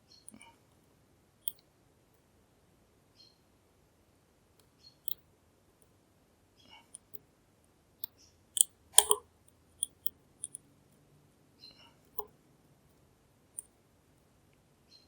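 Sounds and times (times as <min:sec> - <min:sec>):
lock pick clicking in lock: 0:09.0 - 0:09.2, 0:09.8 - 0:10.6.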